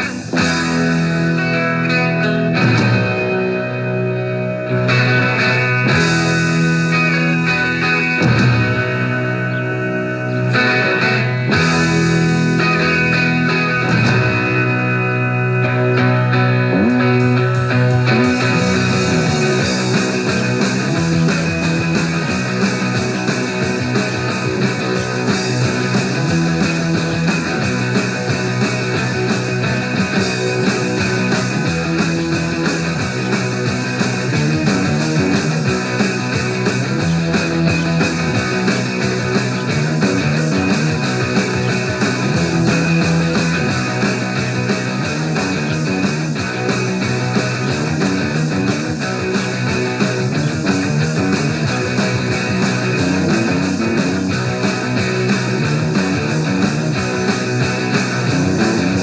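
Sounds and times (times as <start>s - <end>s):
bass line: 0.0s - 59.0s
loud rock music: 0.0s - 59.0s.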